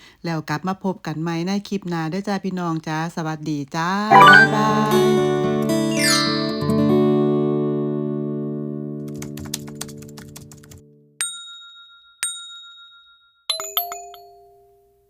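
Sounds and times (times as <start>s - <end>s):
bell-like dings: 4.1s - 4.7s
ringing chime notes: 4.1s - 4.8s.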